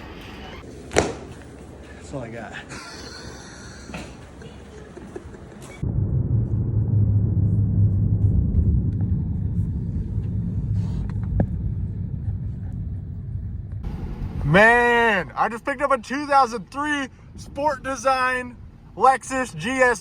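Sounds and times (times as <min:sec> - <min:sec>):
car engine and road noise: 0:05.8 - 0:16.0.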